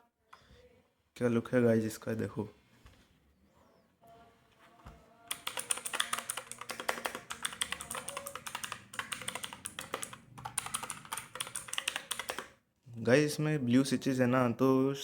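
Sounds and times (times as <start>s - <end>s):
mechanical keyboard typing: 5.3s - 12.6s.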